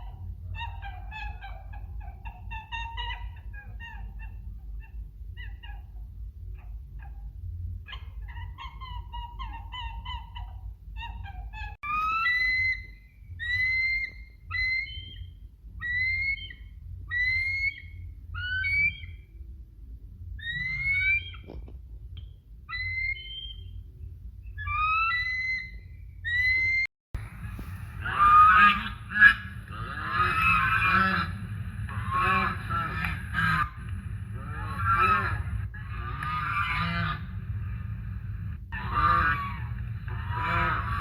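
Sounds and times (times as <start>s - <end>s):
turkey gobbling: 26.3s - 37.3s, 38.8s - 41.0s
geese honking: 27.3s - 37.8s, 38.8s - 41.0s.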